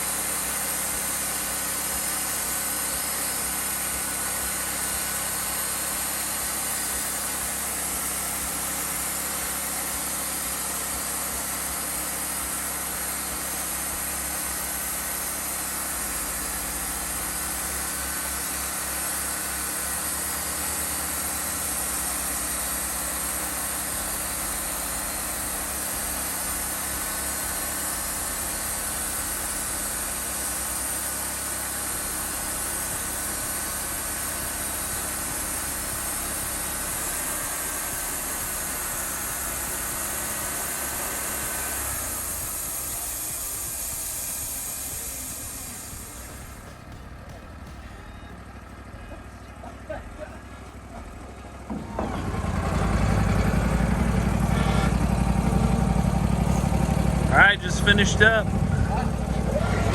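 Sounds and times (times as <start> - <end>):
band sawmill running: 0.0 - 59.9.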